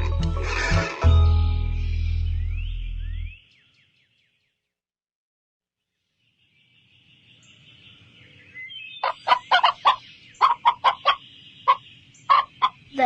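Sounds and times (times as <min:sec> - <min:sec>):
faint farmyard background: 0:00.0 - 0:04.1, 0:05.9 - 0:13.0
chickens clucking: 0:09.0 - 0:12.9.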